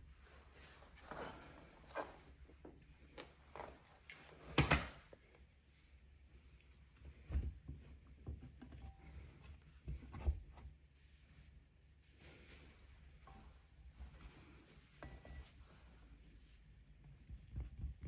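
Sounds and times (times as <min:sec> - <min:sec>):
faint scuffing and rustling: 0:12.1 - 0:16.6.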